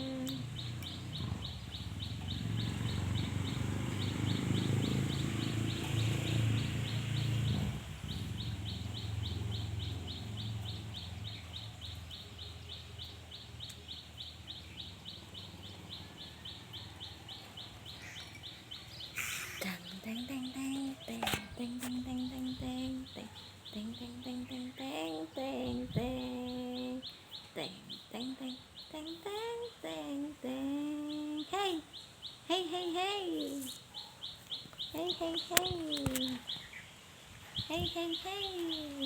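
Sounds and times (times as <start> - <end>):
muffled handling noise: 21.1 - 22.0.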